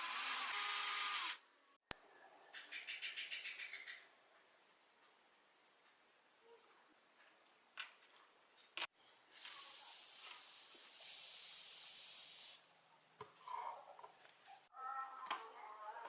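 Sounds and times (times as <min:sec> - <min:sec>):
spray hissing: 0:09.5 - 0:12.6.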